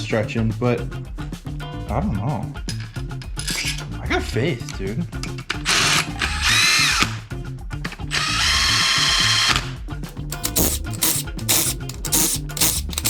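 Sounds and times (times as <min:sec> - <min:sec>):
power drill running: 0:10.1 - 0:13.0.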